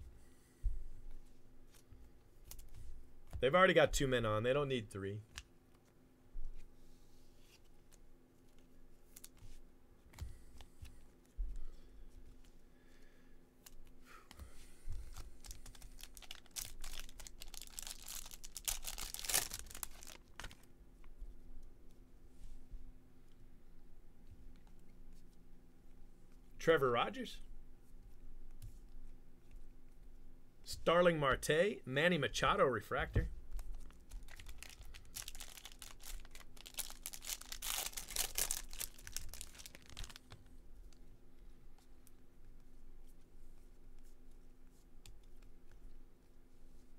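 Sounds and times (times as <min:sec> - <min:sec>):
wrapper tearing and crinkling: 0:15.1 - 0:20.7, 0:33.6 - 0:40.4.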